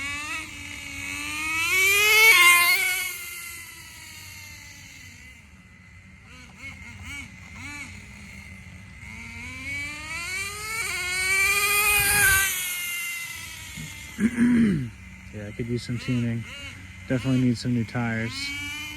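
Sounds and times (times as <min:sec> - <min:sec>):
model engine revving: 0:00.0 - 0:18.9.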